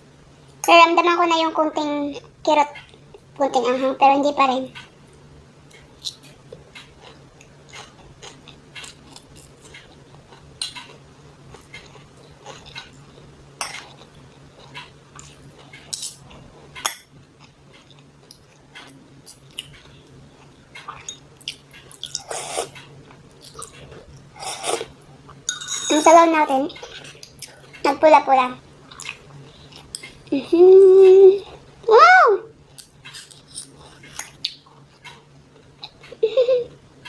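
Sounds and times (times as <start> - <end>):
faint steady hum: 0.0 - 37.0
chewing and mouth sounds: 5.7 - 26.2, 28.9 - 30.3.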